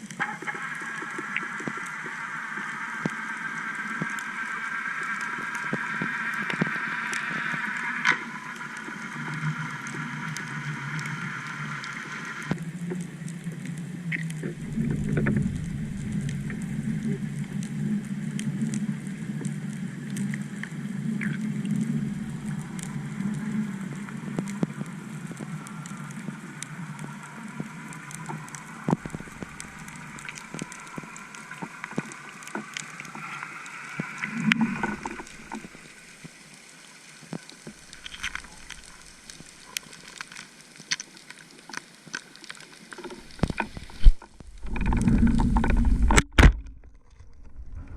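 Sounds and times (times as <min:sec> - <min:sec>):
underwater outboard motor whine: 0:14.5 - 0:18.3.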